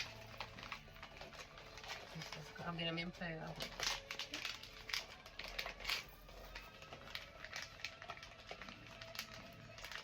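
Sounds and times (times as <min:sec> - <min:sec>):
faint background music: 0:00.0 - 0:10.0
packaging clicks: 0:03.5 - 0:10.0.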